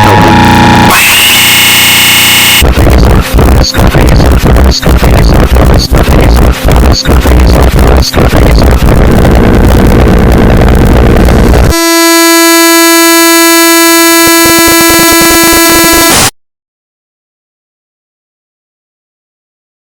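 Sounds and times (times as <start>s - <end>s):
horn-like blare: 0.0s - 2.6s, 11.7s - 16.3s
loud distorted crackling: 0.0s - 12.3s.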